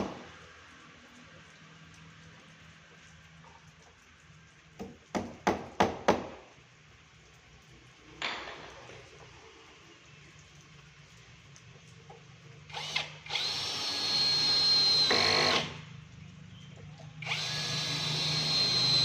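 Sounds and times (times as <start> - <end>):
power drill driving screws: 12.7 - 15.8, 17.2 - 19.0.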